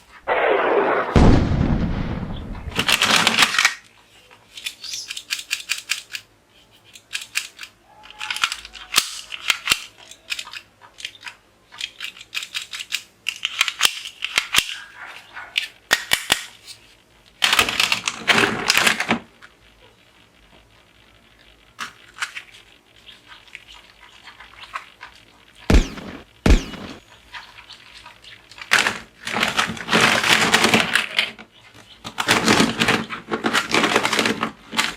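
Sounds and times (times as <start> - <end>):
loud rushing burst: 0.3 - 2.8, 25.7 - 27.0
toy guns firing: 7.1 - 10.7, 25.6 - 27.0.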